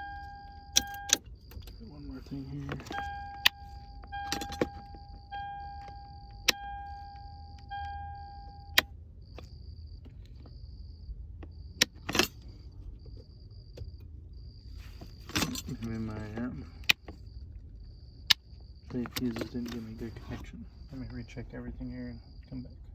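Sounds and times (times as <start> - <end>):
low pulsing tone: 0.0 - 1.2, 2.9 - 8.9
car warning beeps: 0.0 - 8.9.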